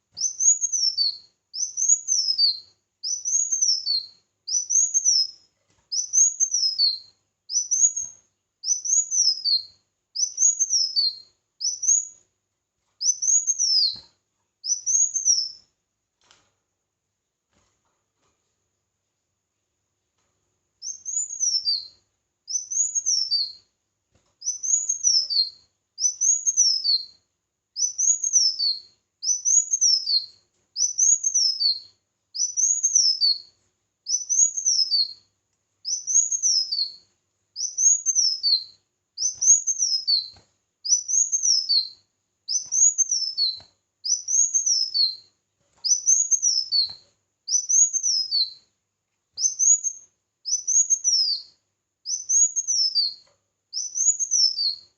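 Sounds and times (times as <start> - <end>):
songbird singing high phrase: 0.2 - 5.4, 6.0 - 12.1, 13.0 - 14.0, 20.8 - 23.6, 24.4 - 27.1, 27.8 - 33.5, 34.1 - 35.2, 35.9 - 37.0, 37.6 - 40.3, 40.9 - 45.2, 45.9 - 46.9, 47.5 - 48.6, 49.4 - 51.5, 52.1 - 53.2, 53.8 - 54.9.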